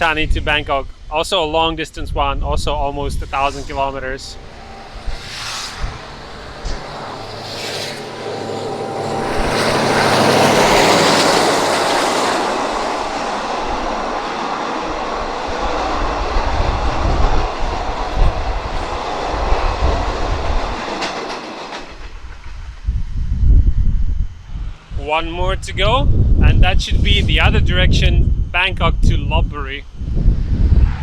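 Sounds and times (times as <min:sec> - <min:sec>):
passenger train passing: 0:02.6 - 0:23.0, 0:24.0 - 0:28.0.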